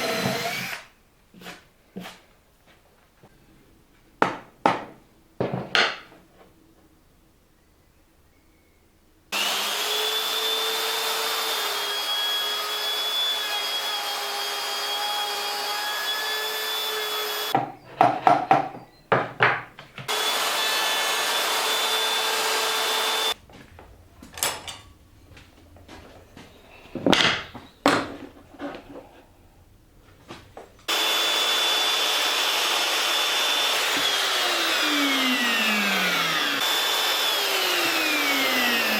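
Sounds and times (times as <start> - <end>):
electric drill boring into wood: 0.0 - 0.9, 9.4 - 17.6, 20.1 - 23.4, 30.9 - 38.9
sharp knocks on wood: 4.2 - 6.0.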